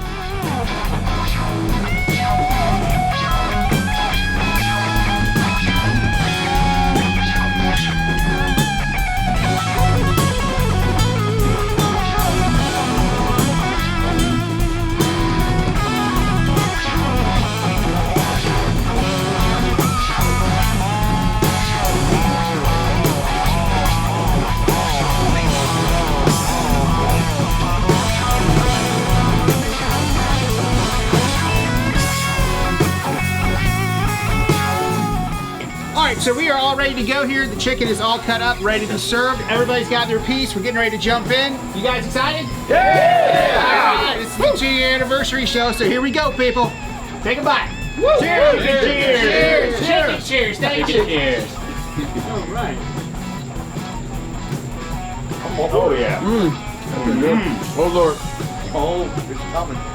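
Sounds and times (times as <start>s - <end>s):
lead guitar bending notes: 0.0s - 36.0s
instrumental rock band: 0.0s - 59.9s.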